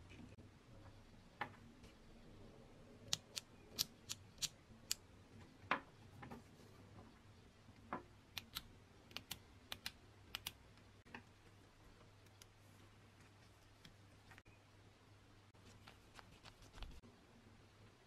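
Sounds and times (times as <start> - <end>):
clicks and taps on small parts: 8.3 - 11.3.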